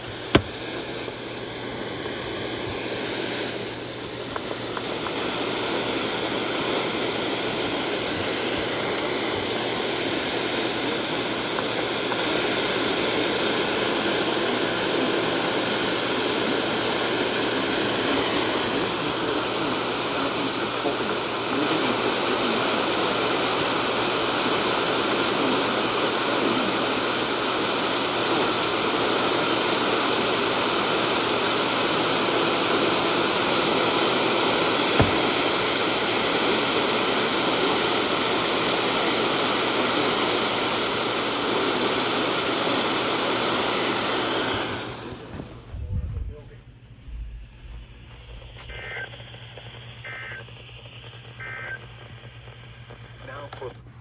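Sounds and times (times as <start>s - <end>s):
radio static hiss: 0.0s - 42.8s, 44.2s - 53.9s
faint steady tones: 45.3s - 54.0s.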